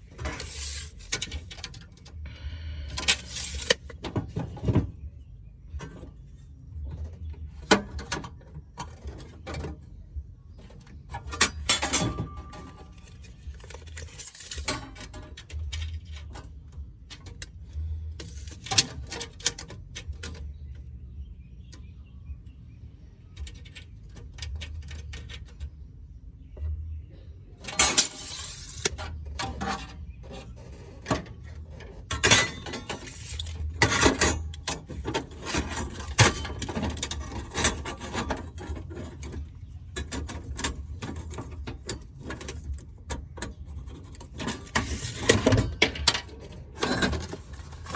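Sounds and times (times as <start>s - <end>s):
hand tools being handled: 0.0s - 2.1s, 2.9s - 4.9s, 10.7s - 20.5s, 27.6s - 47.9s
sheet metal clattering: 11.2s - 16.5s, 27.6s - 47.9s.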